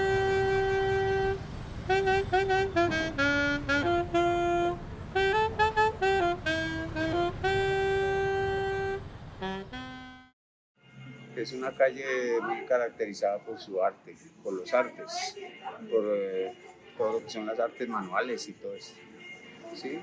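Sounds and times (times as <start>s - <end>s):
low traffic rumble: 0.0s - 10.2s
saxophone slow melody: 0.0s - 10.4s.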